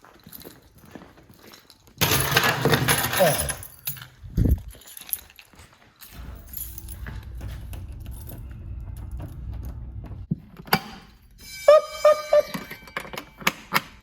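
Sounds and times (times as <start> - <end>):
keys jangling: 0.0 - 10.0, 10.9 - 14.0
low rumble: 6.1 - 10.3.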